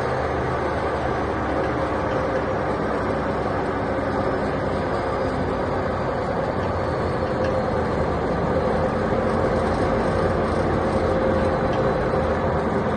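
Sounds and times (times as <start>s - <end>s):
wood chipper engine running: 0.0s - 12.9s.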